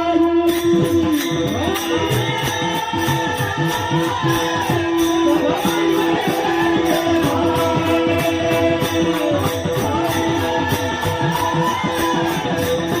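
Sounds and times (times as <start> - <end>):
jingling hand percussion: 0.0 - 13.0
man singing devotional song: 0.0 - 13.0.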